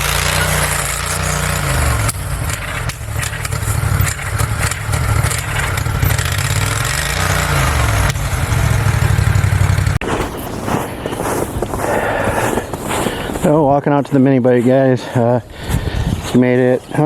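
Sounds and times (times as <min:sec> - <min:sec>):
motorbike engine revving: 0:00.0 - 0:12.8.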